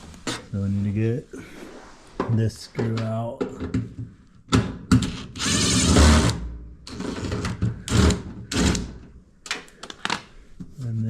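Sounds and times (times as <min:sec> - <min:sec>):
power screwdriver running: 0:05.4 - 0:08.8.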